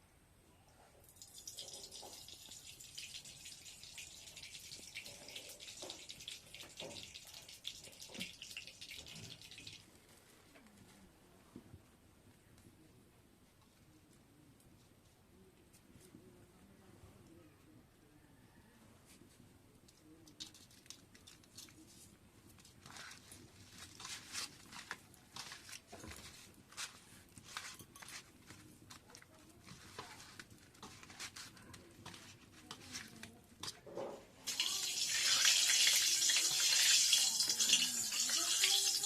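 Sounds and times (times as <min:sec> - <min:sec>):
oil crackling and popping: 0:01.1 - 0:09.9, 0:34.4 - 0:39.0
oil sizzling in a pan: 0:01.2 - 0:09.8, 0:34.4 - 0:39.0.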